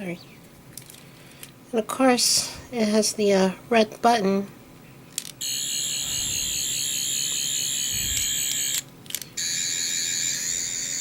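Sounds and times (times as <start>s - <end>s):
toy high warbling electronic tone: 5.4s - 8.5s, 9.4s - 11.0s.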